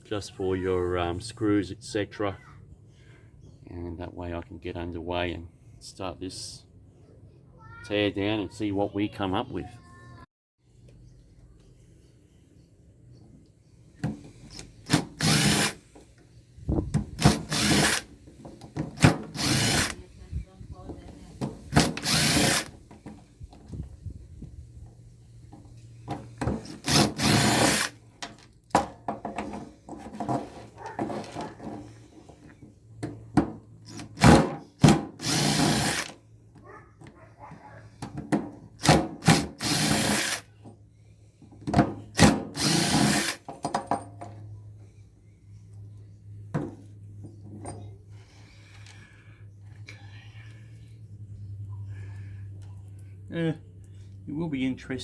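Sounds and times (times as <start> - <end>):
cordless drill spinning: 14.5 - 15.8, 17.2 - 18.1, 19.3 - 20.0, 21.8 - 22.8, 26.6 - 28.0, 35.2 - 36.2, 39.3 - 40.5, 42.6 - 43.4.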